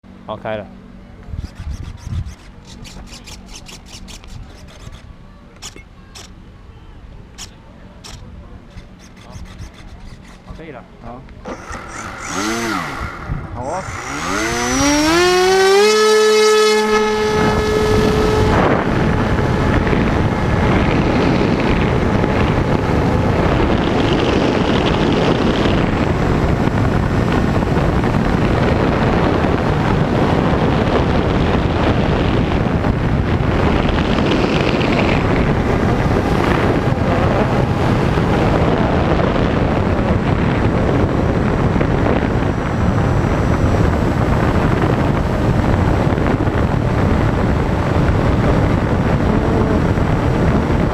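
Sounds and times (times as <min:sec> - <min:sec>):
wind rushing over microphone: 0:00.1 - 0:50.9
whining tone: 0:00.7 - 0:28.5.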